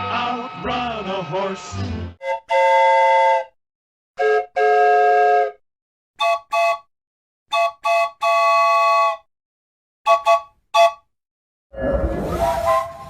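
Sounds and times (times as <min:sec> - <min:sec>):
steam train whistle blasts: 0:02.2 - 0:03.5, 0:04.2 - 0:05.6, 0:10.1 - 0:11.0.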